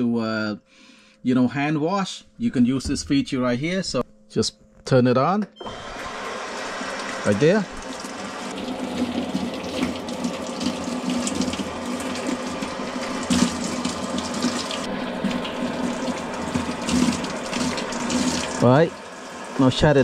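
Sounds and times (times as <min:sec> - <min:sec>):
water streaming from faucet: 0:05.7 - 0:20.0.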